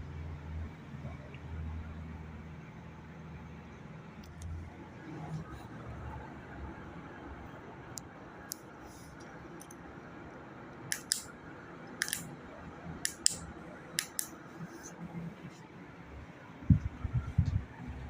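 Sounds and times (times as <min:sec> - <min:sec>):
ceiling fan humming: 0:04.2 - 0:18.0
sharp clicks: 0:10.9 - 0:11.3, 0:12.0 - 0:12.3, 0:13.0 - 0:14.4.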